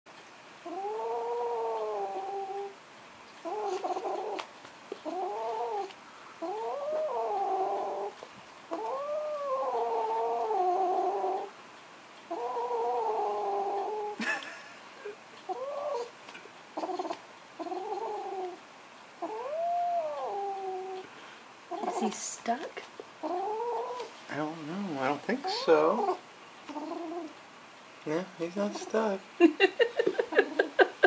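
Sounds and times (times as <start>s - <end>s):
kitten growling: 0.6s - 2.8s, 3.4s - 11.5s, 12.3s - 14.2s, 15.5s - 16.2s, 16.8s - 18.6s, 19.2s - 21.0s, 21.7s - 22.1s, 23.2s - 24.1s, 25.0s - 27.4s, 30.2s - 31.0s.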